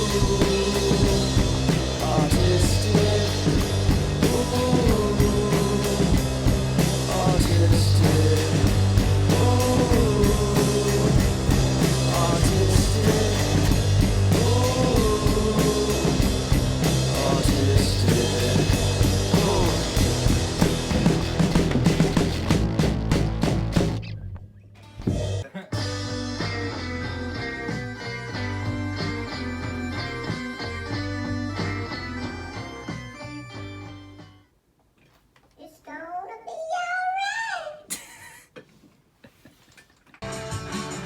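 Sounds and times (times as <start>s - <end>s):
drum kit: 0.0s - 24.2s, 24.8s - 34.4s, 40.2s - 41.0s
bass guitar: 0.0s - 34.4s, 40.2s - 41.0s
guitar with sliding melodic phrase: 25.8s - 34.0s.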